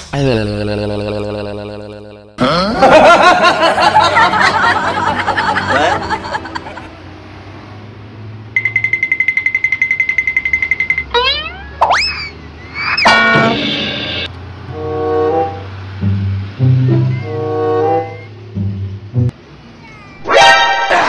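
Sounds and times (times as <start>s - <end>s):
people laughing: 2.4s - 6.9s, 20.8s - 21.0s
rapid high-pitched beeping: 8.6s - 14.3s.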